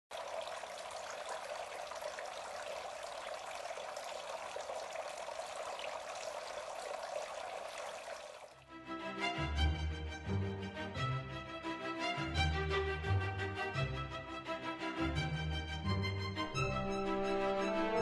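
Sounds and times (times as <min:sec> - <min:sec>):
fountain water splashing and trickling: 0:00.1 - 0:08.7.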